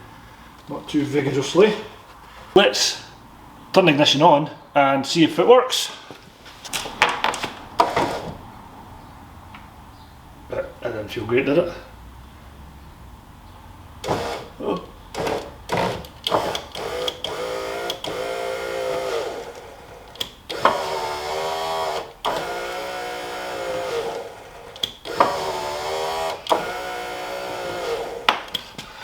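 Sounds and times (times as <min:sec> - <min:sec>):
electric window motor whining: 0:07.8 - 0:08.4, 0:14.0 - 0:28.6.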